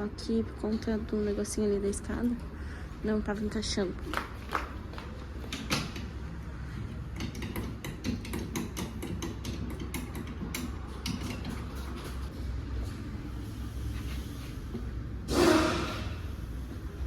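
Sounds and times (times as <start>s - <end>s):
metallic clicks and knocks: 5.4s - 6.2s, 7.1s - 12.2s.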